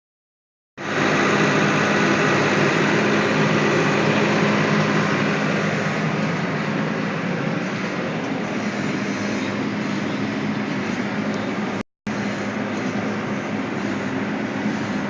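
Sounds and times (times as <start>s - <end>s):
diesel engine running: 0.8s - 15.0s.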